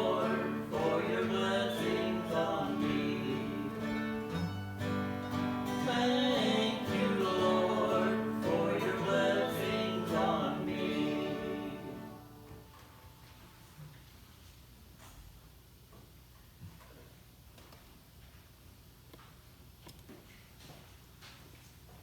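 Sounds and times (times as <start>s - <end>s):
person singing: 0.0s - 4.4s, 5.4s - 12.2s
instrumental held chords: 0.0s - 12.7s.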